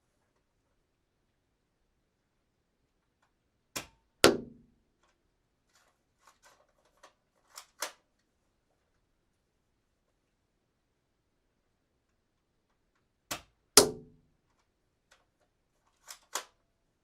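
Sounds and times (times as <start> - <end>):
toy dart gun shot: 13.3 - 14.1.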